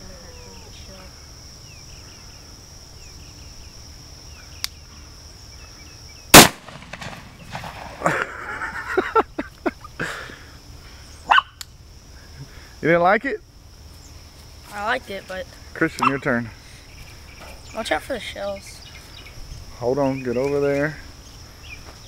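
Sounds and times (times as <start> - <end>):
crickets chirring: 0.0 - 22.0
shotgun blast: 6.3 - 8.2.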